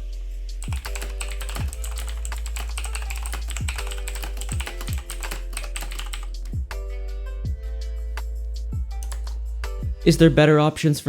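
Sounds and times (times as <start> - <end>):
background music: 0.0 - 11.0
mechanical keyboard typing: 0.6 - 6.4.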